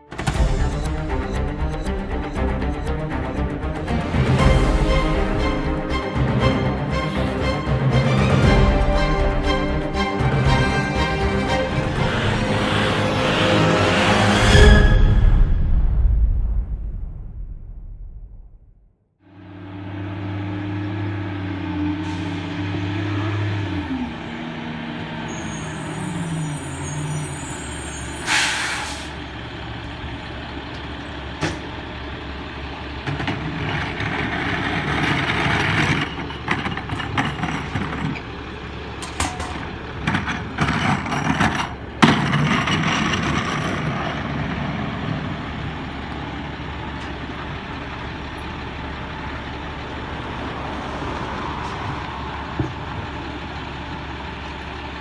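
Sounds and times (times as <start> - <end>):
diesel truck engine: 0.0 - 14.9, 19.3 - 55.0
air brake hiss: 25.6 - 29.2.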